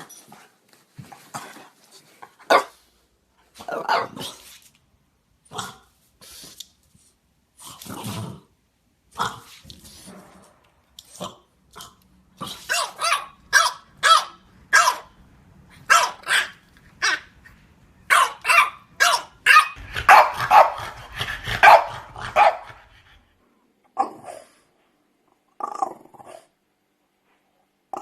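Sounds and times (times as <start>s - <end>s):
dog barking: 2.5s - 2.7s, 12.7s - 15.1s, 15.8s - 17.3s, 18.1s - 22.8s.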